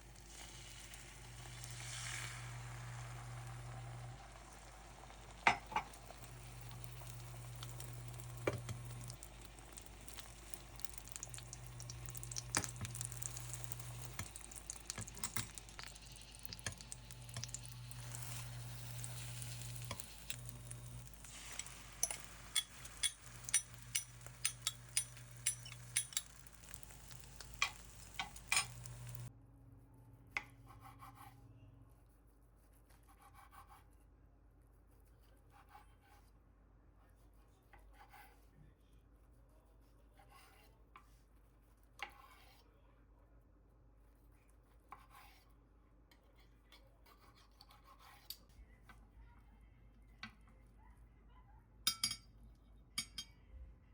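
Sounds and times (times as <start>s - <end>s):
food sizzling in a frying pan: 0.0s - 29.3s
utensil tapping a pan: 5.4s - 29.3s, 51.9s - 52.2s.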